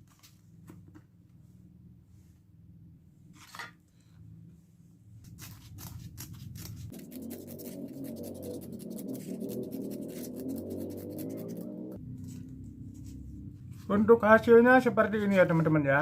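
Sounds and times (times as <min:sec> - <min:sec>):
scissors cutting sandpaper: 0:05.2 - 0:11.8.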